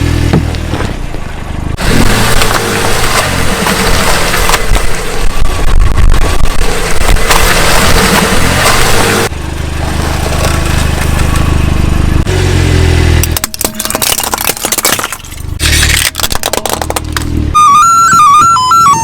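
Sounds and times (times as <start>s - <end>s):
car engine running: 0.0s - 19.0s
tyres crushing brittle objects: 1.8s - 11.6s, 13.2s - 17.5s.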